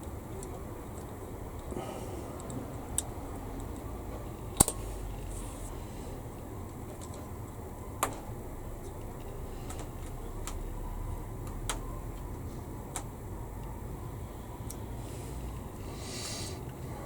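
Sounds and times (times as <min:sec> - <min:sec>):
plastic parts clicking: 0:04.5 - 0:04.9, 0:06.9 - 0:07.3.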